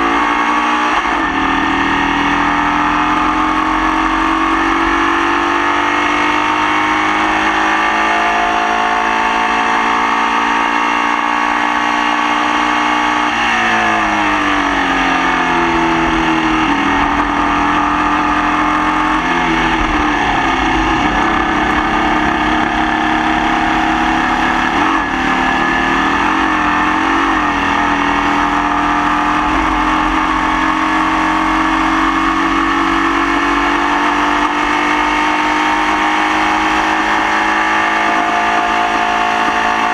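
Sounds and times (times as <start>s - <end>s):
racing car engine misfiring: 13.8s - 39.0s.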